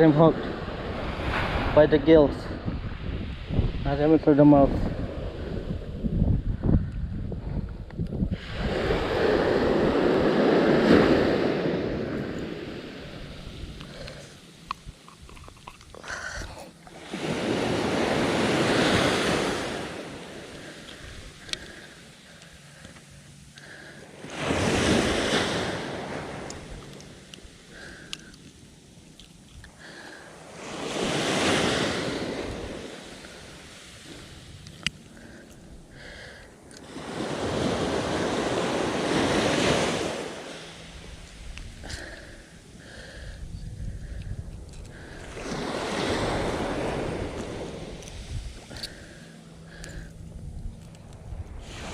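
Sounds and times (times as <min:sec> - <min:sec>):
ocean waves crashing: 0:00.0 - 0:05.9, 0:08.4 - 0:51.9
surf breaking on beach: 0:00.0 - 0:06.0, 0:08.4 - 0:13.8, 0:16.9 - 0:21.3, 0:24.2 - 0:26.8, 0:30.4 - 0:34.5, 0:36.8 - 0:42.4, 0:51.6 - 0:51.9
wind on microphone: 0:00.0 - 0:21.7, 0:40.9 - 0:51.9.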